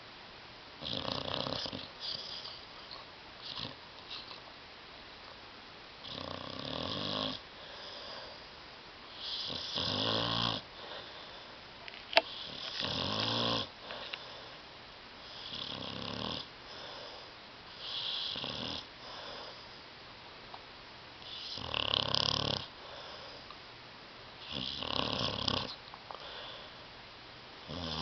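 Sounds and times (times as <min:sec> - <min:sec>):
dog snoring: 0:00.8 - 0:02.6, 0:03.4 - 0:04.4, 0:06.0 - 0:08.4, 0:09.1 - 0:11.1, 0:12.2 - 0:14.5, 0:15.2 - 0:19.7, 0:21.2 - 0:23.5, 0:24.4 - 0:26.6, 0:27.6 - 0:28.0.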